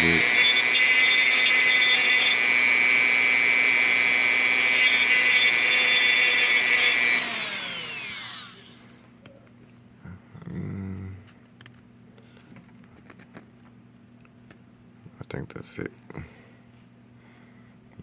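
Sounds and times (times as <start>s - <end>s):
rotary tool whine: 0.0s - 9.0s.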